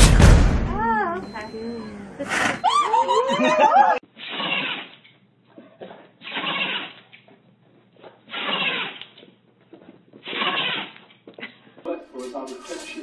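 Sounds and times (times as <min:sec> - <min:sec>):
small animal sneezing: 0:04.2 - 0:05.0, 0:05.6 - 0:07.0, 0:08.3 - 0:09.0, 0:10.2 - 0:11.0.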